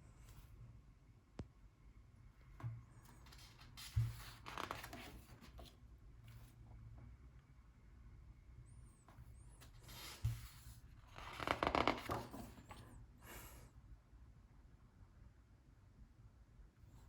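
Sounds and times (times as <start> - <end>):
book pages rustling: 3.1 - 6.5, 9.6 - 12.9.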